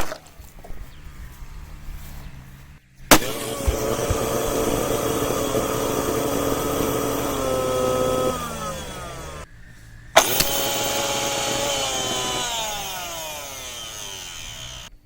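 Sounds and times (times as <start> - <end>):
electric motor running: 0.9 - 15.0
motor switch click: 3.1 - 9.4, 10.2 - 15.0.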